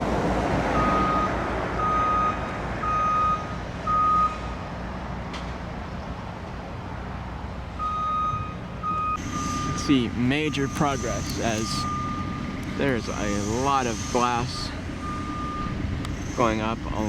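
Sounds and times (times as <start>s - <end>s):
low rumble of engines and traffic: 0.0s - 17.0s
vehicle backup alarm beeping: 0.8s - 4.5s, 7.8s - 17.0s.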